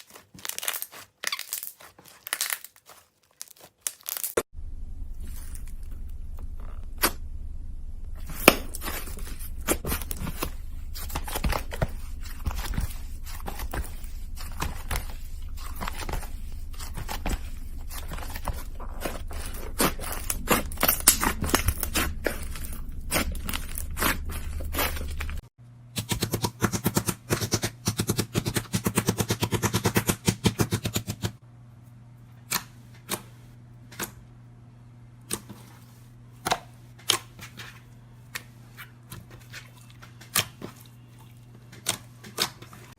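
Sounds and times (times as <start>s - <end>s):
slime crackling and popping: 0.0s - 4.4s.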